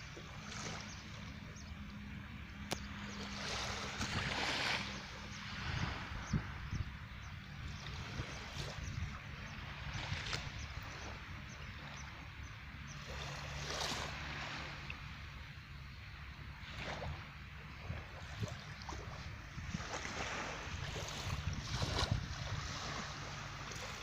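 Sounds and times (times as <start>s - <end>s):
wind rumbling on microphone: 0.0s - 15.7s, 16.5s - 24.0s
sea surf washing in: 3.2s - 6.7s, 18.2s - 24.0s.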